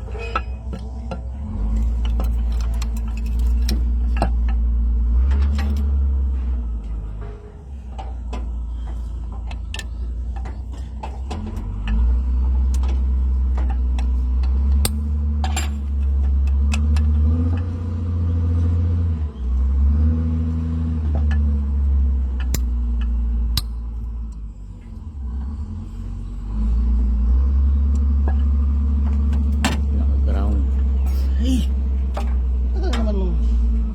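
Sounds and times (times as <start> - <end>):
machine rumbling and humming: 0.0 - 33.9
sharp clicks and knocks: 7.2 - 17.7, 22.4 - 24.5.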